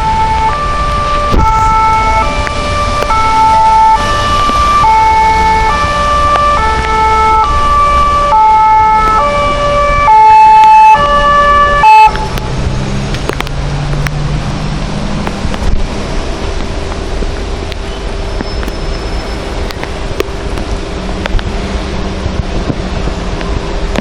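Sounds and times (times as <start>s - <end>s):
two-tone siren: 0.0s - 12.4s
vehicle engine rumble: 0.0s - 24.0s.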